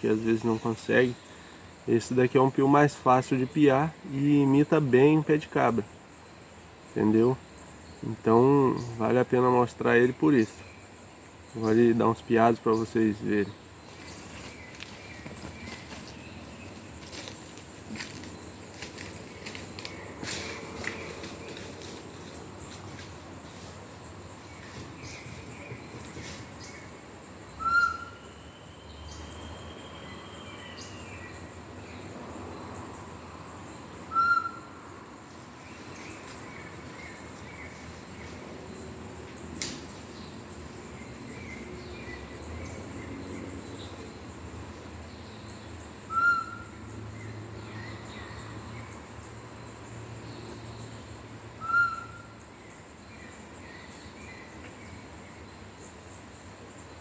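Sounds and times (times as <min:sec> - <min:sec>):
outdoor background noise: 0:00.0 - 0:57.0
wooden bird call whistle: 0:27.6 - 0:28.2, 0:34.1 - 0:34.6, 0:46.1 - 0:46.6, 0:51.6 - 0:52.3.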